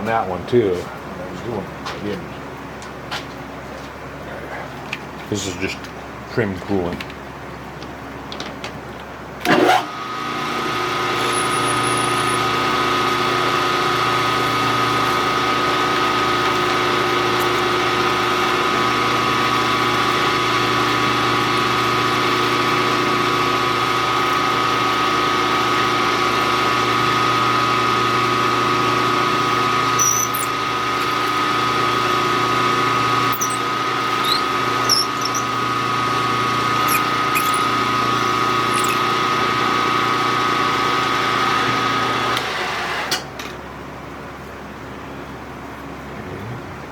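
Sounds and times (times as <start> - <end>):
milling machine whining: 10.8 - 12.9, 29.9 - 40.3
faint ticks and squeaks: 30.0 - 31.3, 33.3 - 35.6, 36.9 - 37.7, 38.7 - 39.2.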